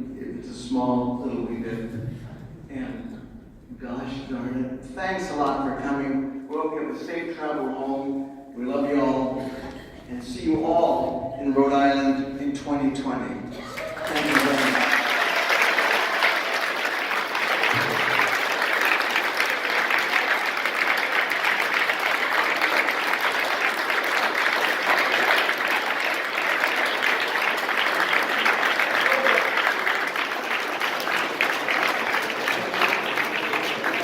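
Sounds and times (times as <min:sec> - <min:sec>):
audience applauding: 0:13.6 - 0:34.0.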